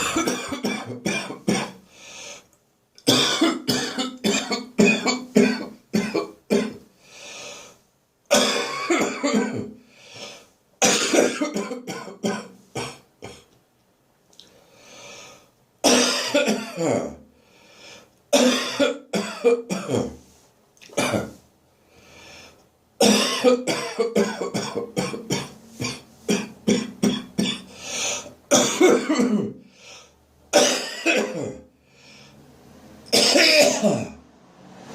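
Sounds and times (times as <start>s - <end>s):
person coughing: 0.0s - 1.8s, 3.1s - 6.8s, 8.3s - 9.8s, 10.8s - 13.5s, 15.8s - 17.2s, 18.4s - 20.2s, 20.9s - 21.4s, 23.0s - 29.6s, 30.6s - 31.7s, 33.1s - 34.2s.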